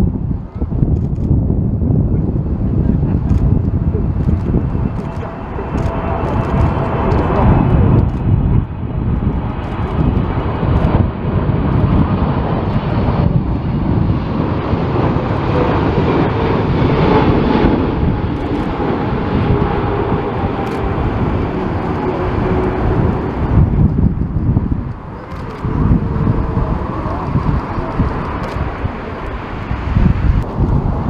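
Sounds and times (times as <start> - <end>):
jet engines rumbling: 0.0 - 31.0
wind buffeting microphone: 0.0 - 31.0.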